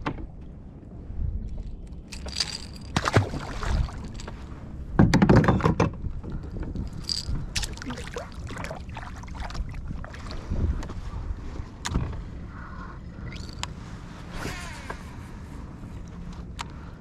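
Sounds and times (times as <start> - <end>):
wind rumbling on microphone: 0.0 - 17.0
knocks and clicks in kayak: 4.1 - 7.9.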